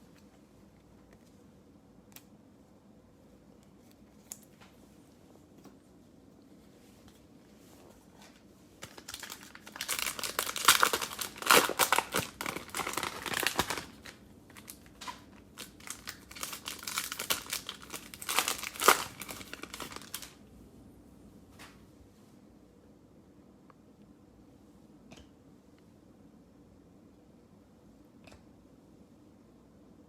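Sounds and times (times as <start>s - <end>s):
plastic wrapper crinkling and tearing: 8.8s - 20.4s.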